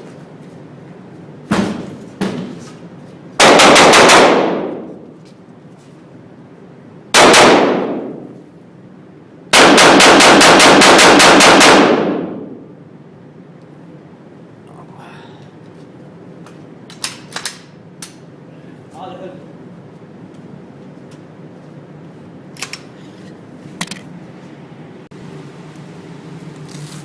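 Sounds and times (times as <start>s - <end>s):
machine pistol firing bursts: 3.4s - 4.7s, 7.2s - 8.0s, 9.5s - 12.3s
sharp gunshot cracks: 9.6s - 12.4s.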